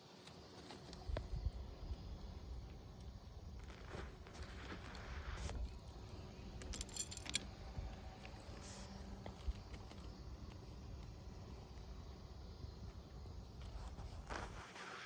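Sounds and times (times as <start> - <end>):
metal objects clinking: 6.6 - 7.5.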